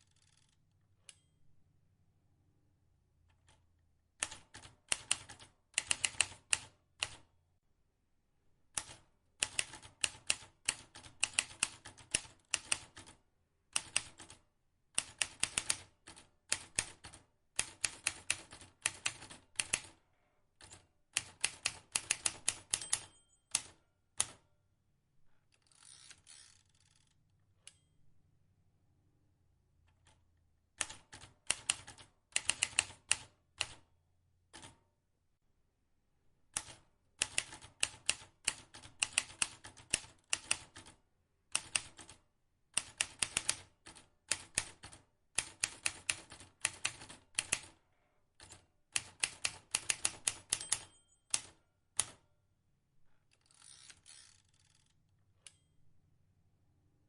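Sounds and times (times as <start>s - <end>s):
manual typewriter typing: 4.2s - 7.2s, 8.7s - 14.4s, 15.0s - 20.0s, 20.6s - 24.4s, 30.8s - 33.8s, 36.5s - 47.8s, 48.4s - 52.2s.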